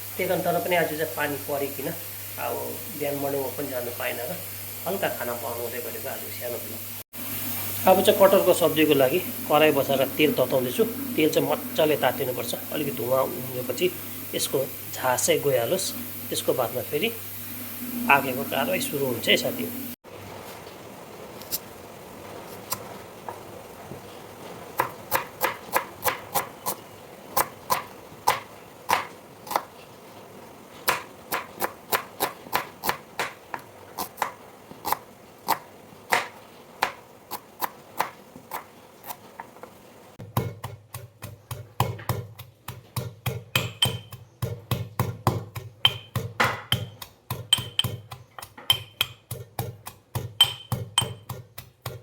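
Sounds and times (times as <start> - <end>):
low hum: 7.2 - 20.0
knife chopping on cutting board: 24.8 - 26.5, 30.8 - 33.4, 34.0 - 39.2, 40.2 - 52.0.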